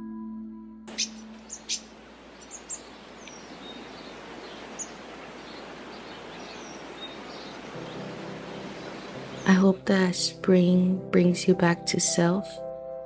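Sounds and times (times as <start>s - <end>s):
high falling bird chirps: 0.9s - 9.6s
background hiss: 0.9s - 9.7s.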